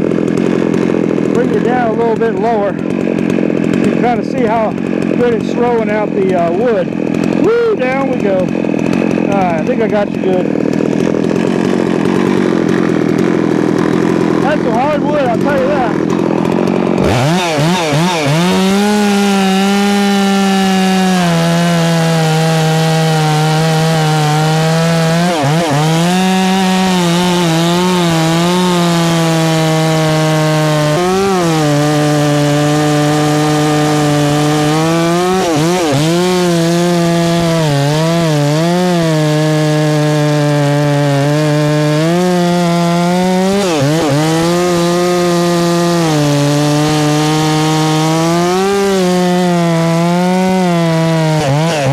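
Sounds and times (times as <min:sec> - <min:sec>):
chainsaw cutting log: 0:00.0 - 0:51.9.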